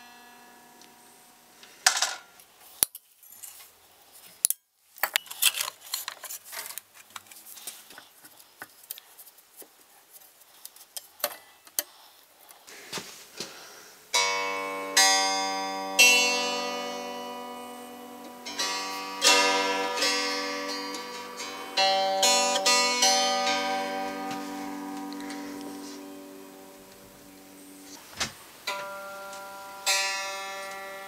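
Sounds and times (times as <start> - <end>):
guitar chords strummed: 14.2 - 28.0, 28.7 - 31.0.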